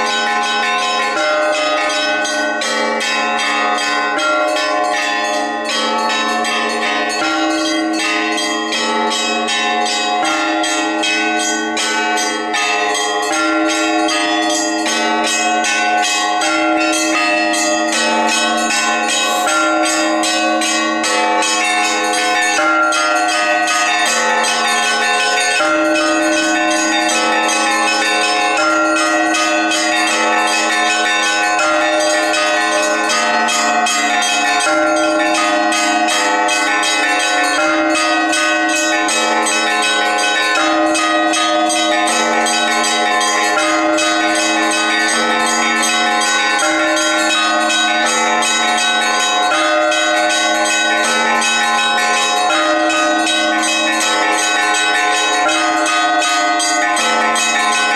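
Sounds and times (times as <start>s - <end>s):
church bells ringing a peal: 0.0s - 57.9s.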